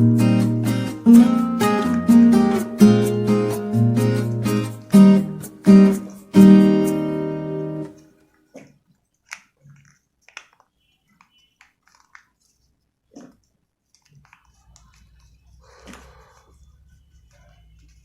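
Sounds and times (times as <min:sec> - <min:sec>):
strummed acoustic guitar: 0:00.0 - 0:08.0
faint clicks and rustles: 0:08.0 - 0:18.0.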